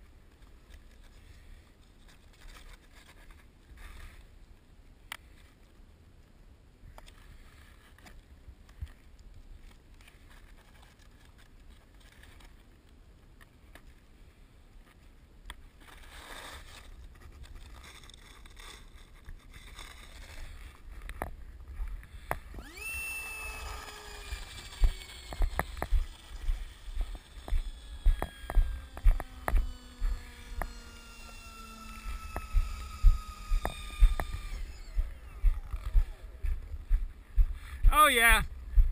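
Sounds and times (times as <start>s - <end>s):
high whine falling in pitch: 22.5s - 37.1s
wind rumbling on microphone: 23.5s - 30.9s, 31.8s - 38.9s.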